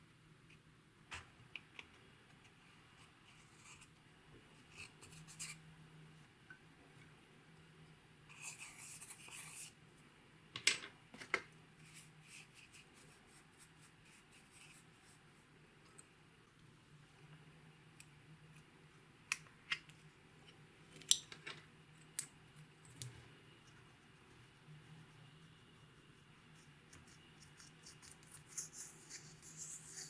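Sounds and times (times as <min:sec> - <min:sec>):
scraping and rubbing: 0:27.0 - 0:30.0.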